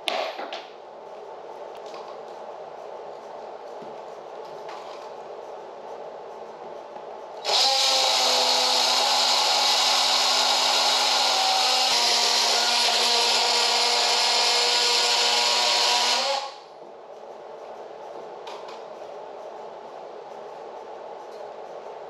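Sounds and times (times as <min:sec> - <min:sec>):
power tool motor whine: 0:07.4 - 0:16.6.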